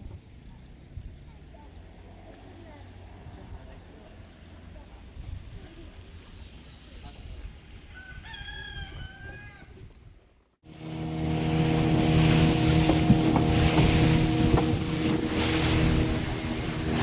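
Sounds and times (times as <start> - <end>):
motorboat engine running: 10.7 - 17.0
wind and water noise: 10.7 - 17.0.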